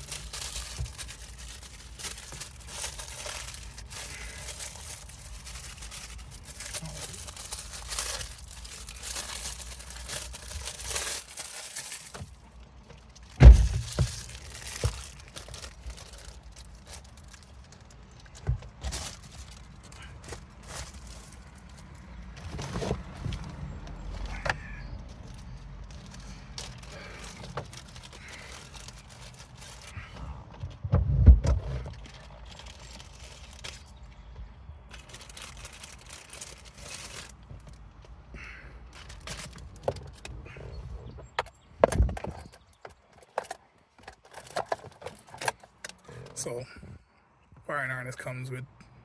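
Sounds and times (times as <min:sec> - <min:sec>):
loud thump: 0:13.4 - 0:14.2, 0:30.8 - 0:31.7.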